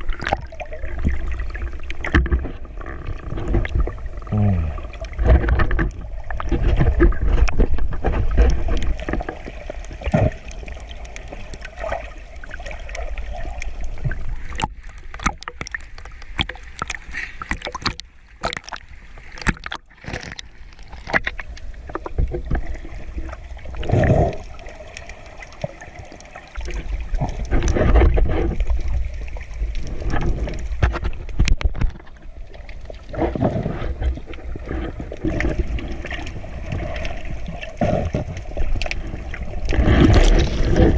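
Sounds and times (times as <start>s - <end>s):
seawater sloshing and churning: 0.0s - 40.9s
sharp clicks and crackles: 12.6s - 22.7s, 23.8s - 40.9s.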